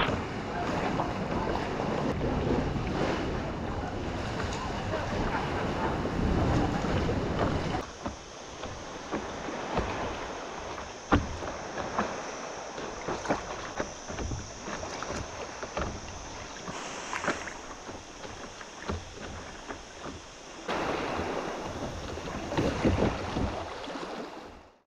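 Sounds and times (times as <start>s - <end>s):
wind buffeting microphone: 0.0s - 7.8s
paddle strokes knocking: 0.0s - 24.3s
water splashing and lapping: 0.0s - 24.8s.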